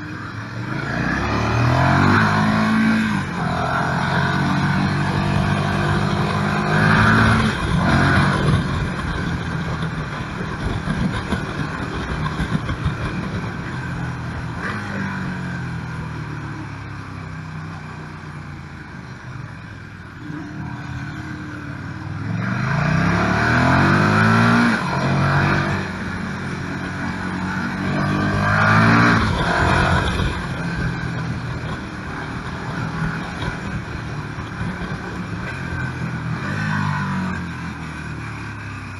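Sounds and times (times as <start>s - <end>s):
motorcycle engine pulling hard: 0.6s - 16.2s, 20.2s - 38.9s.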